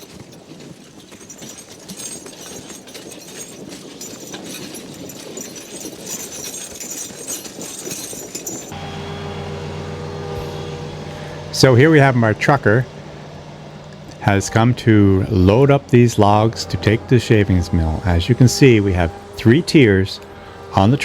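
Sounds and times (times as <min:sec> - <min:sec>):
harness jingling: 0:00.0 - 0:08.8, 0:10.2 - 0:21.0
wagon rattling: 0:00.0 - 0:09.0, 0:09.9 - 0:21.0
horse hooves clattering: 0:00.0 - 0:21.0
diesel truck engine idling: 0:08.7 - 0:21.0.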